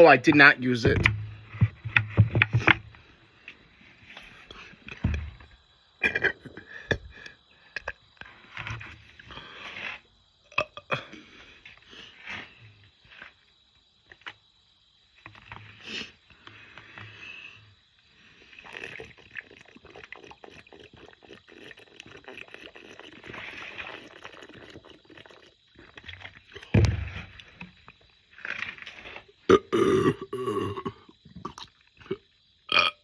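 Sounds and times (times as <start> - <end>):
crackly noise: 0.0 - 33.0
man burping: 6.0 - 8.0, 10.5 - 11.2, 29.5 - 33.0.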